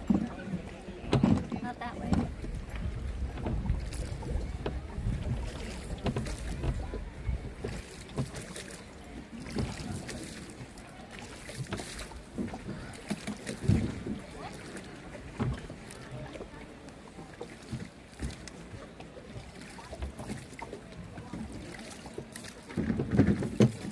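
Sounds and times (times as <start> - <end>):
wind rumbling on microphone: 0.0 - 16.9
paddle splashing in water: 0.0 - 23.9.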